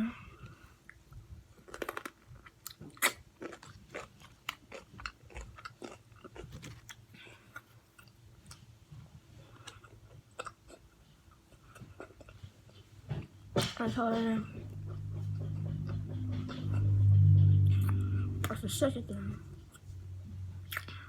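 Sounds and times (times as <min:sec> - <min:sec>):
crunchy chewing: 0:01.6 - 0:08.6.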